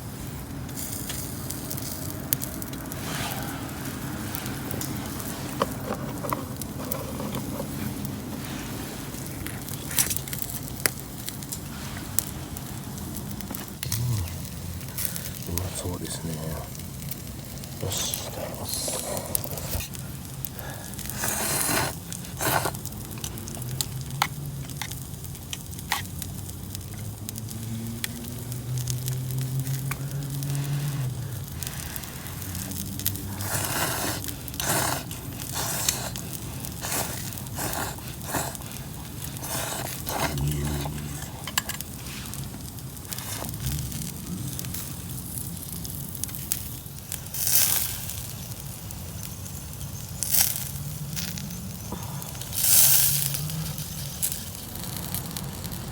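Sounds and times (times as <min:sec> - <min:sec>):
campfire crackling and popping: 0:00.0 - 0:55.9
person eating close up: 0:09.2 - 0:24.9, 0:28.5 - 0:45.2.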